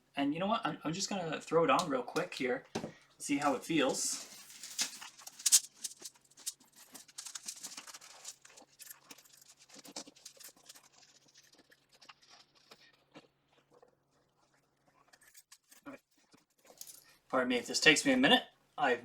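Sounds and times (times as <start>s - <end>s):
scratching and rustling: 3.4s - 13.0s.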